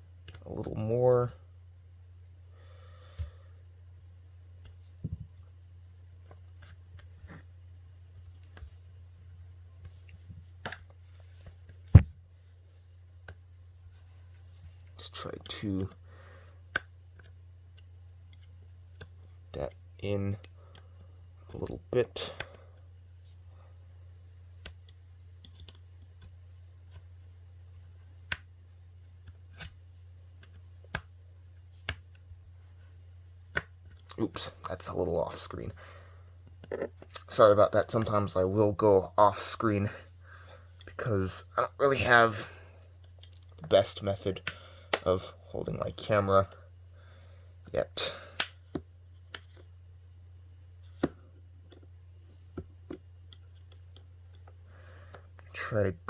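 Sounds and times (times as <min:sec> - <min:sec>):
steady low hum: 0:00.0 - 0:56.0.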